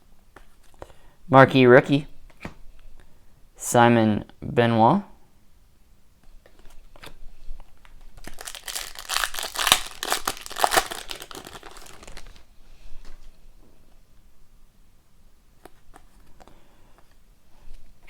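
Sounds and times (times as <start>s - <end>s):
foil wrapper crinkling: 8.2s - 12.4s.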